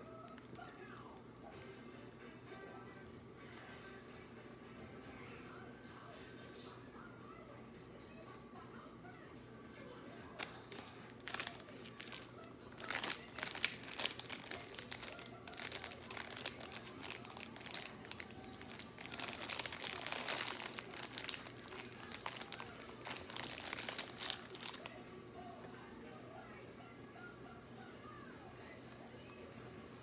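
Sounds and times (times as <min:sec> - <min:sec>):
paper packaging crumpling: 0:10.4 - 0:25.0.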